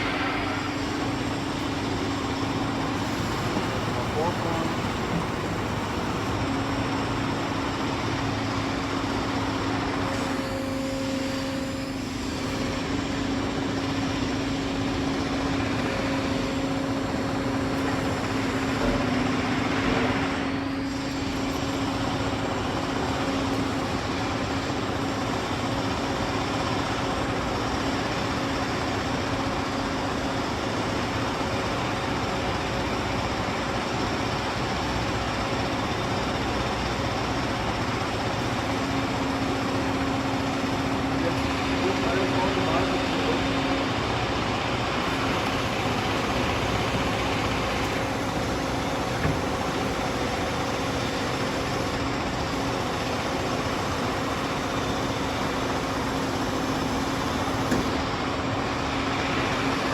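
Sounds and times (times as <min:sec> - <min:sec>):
droning hum: 0:00.0 - 0:19.4
lathe machine running: 0:00.0 - 0:59.9.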